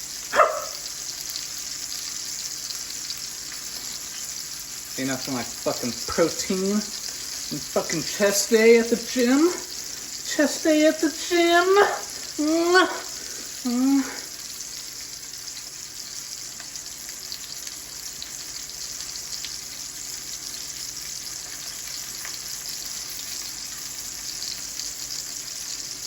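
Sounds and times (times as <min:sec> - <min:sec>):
steaks sizzling in a pan: 0:00.0 - 0:26.0
man's voice: 0:07.5 - 0:09.6, 0:10.3 - 0:13.0.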